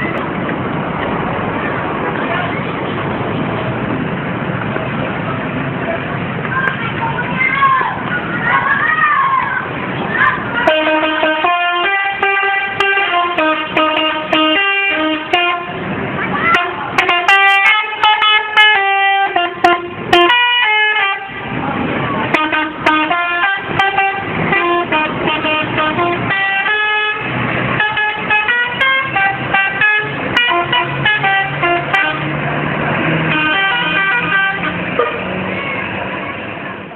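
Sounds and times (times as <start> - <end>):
musical bus horn: 10.6 - 21.5, 22.3 - 36.0.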